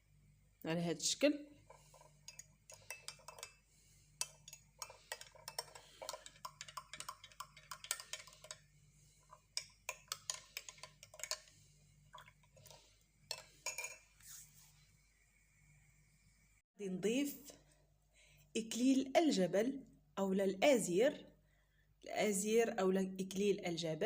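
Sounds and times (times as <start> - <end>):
spoon clicking against glass: 4.2 - 8.6.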